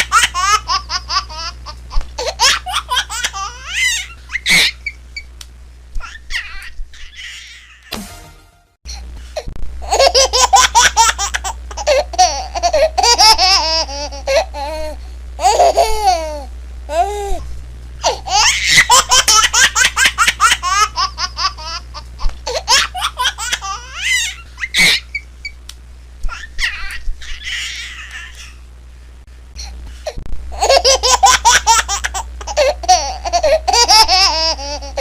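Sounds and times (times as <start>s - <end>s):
baby laughing: 0.0s - 5.0s, 9.8s - 17.1s, 18.0s - 25.2s, 26.3s - 28.6s, 30.6s - 35.0s.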